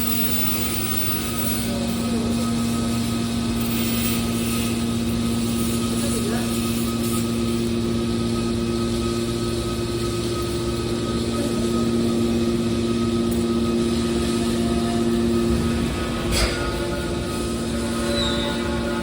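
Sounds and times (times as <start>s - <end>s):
machine hum with whine: 0.0s - 19.0s.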